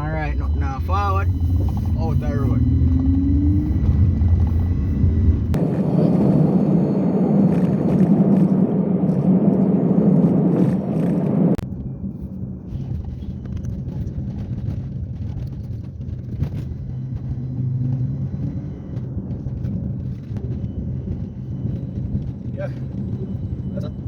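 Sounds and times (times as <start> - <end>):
car engine and road noise: 0.0 - 24.0.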